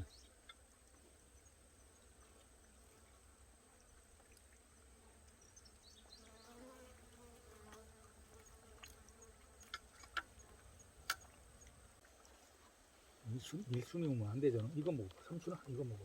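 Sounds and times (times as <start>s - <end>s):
flying insect buzzing: 4.8s - 10.7s.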